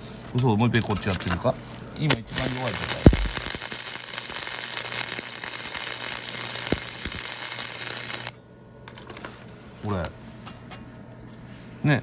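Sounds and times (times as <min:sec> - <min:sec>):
welding arc crackling: 0:02.0 - 0:08.4.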